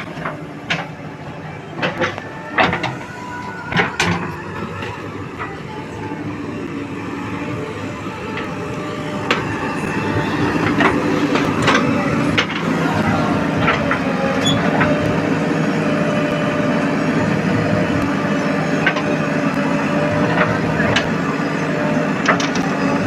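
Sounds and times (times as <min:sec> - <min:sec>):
backhoe diesel engine running: 0:00.0 - 0:23.0.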